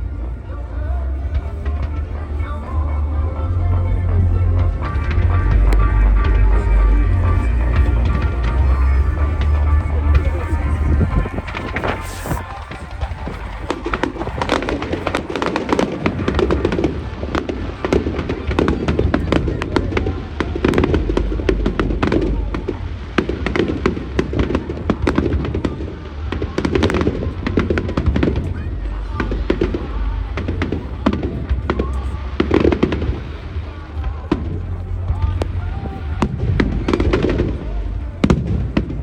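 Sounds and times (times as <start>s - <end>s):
fireworks bangs and crackles: 0.0s - 39.0s
music playing: 0.0s - 39.0s.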